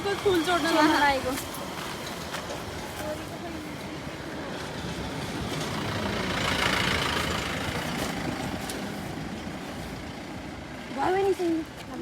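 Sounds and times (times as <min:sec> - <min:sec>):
motor vehicle passing by: 0:04.3 - 0:11.2.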